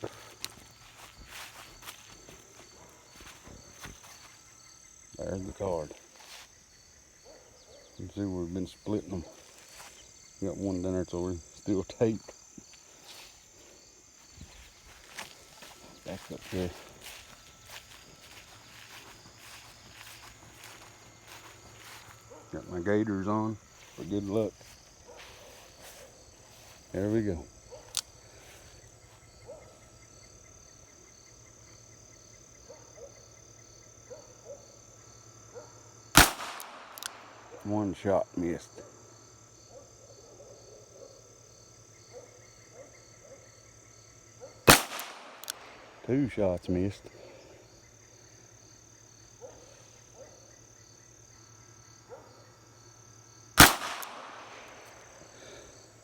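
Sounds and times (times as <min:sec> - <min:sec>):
crickets trilling: 0:00.0 - 0:56.0
gunshot echo: 0:36.2 - 0:37.6, 0:44.7 - 0:46.0, 0:53.6 - 0:55.1
revolver gunshot: 0:36.2 - 0:37.6, 0:44.7 - 0:45.9, 0:53.6 - 0:55.0.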